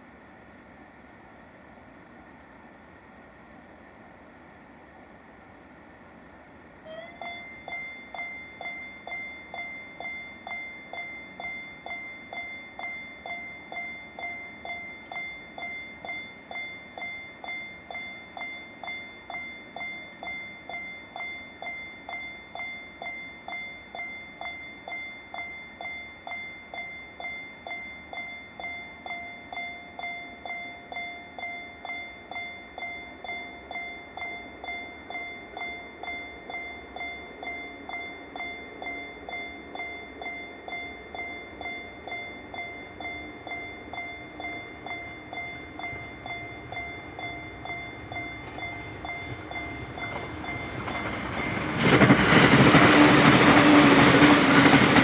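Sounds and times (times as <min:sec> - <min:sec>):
level crossing warning bell: 0:06.8 - 0:55.0.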